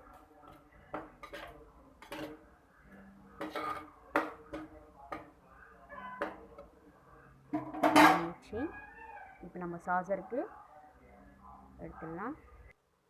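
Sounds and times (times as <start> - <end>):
spoon scraping cooking pan: 0.1 - 5.4, 6.0 - 6.7.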